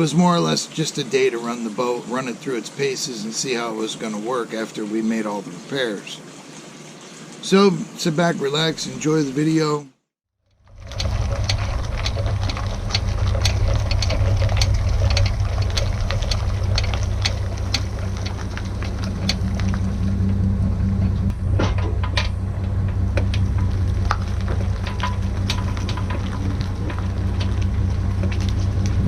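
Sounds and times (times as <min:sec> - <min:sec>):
outboard motor droning: 0:10.5 - 0:29.0
sharp clicks and knocks: 0:10.7 - 0:20.4, 0:21.0 - 0:29.0.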